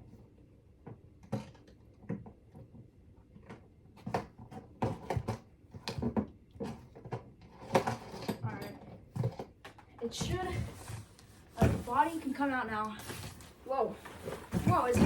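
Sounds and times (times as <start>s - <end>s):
packaging rustling and knocking: 13.0s - 15.0s.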